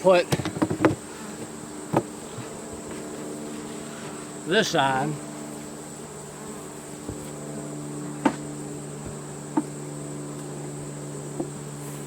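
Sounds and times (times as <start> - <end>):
honeybees buzzing: 0.0 - 12.0
sharp knocks: 8.2 - 8.4.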